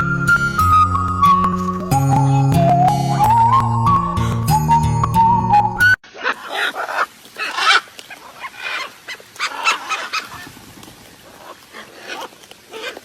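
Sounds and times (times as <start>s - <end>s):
harsh rasping animal calls: 6.1s - 10.6s, 11.2s - 13.0s.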